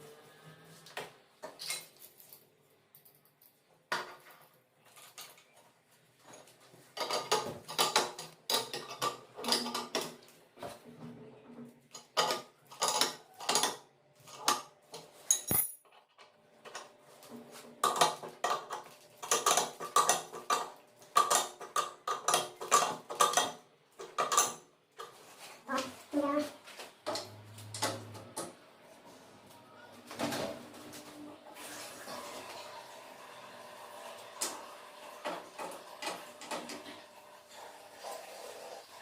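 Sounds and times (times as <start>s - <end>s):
metal tools clinking and rattling: 1.5s - 5.6s, 15.3s - 16.1s.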